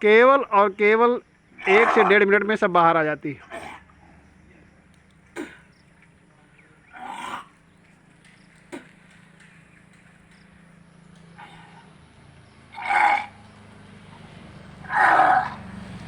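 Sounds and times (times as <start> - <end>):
person retching and heaving: 5.3 - 5.7, 7.0 - 7.5.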